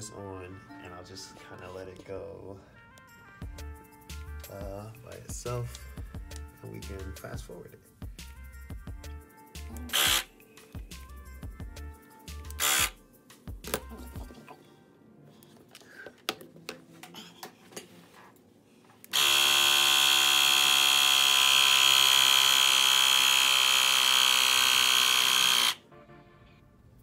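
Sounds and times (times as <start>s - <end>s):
air compressor pump buzzing: 9.8s - 10.3s, 12.6s - 13.0s, 19.1s - 25.8s.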